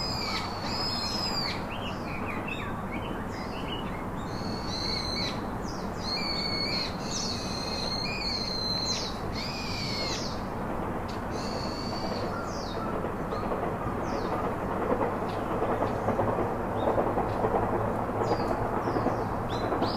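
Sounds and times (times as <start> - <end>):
steady rushing noise: 10.2 - 19.9.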